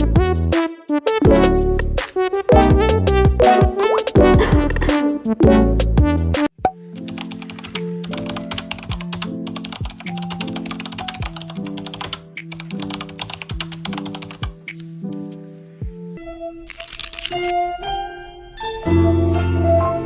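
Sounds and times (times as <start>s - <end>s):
synth chords: 2.5s - 5.8s
dry clicking percussion: 6.6s - 14.9s.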